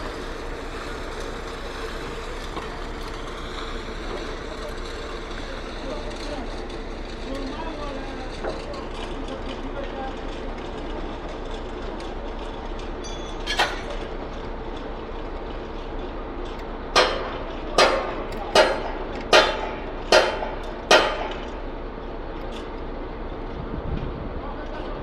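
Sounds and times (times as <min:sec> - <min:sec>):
concrete pump engine running: 0:00.0 - 0:25.0
loud metallic knocks: 0:17.0 - 0:21.6.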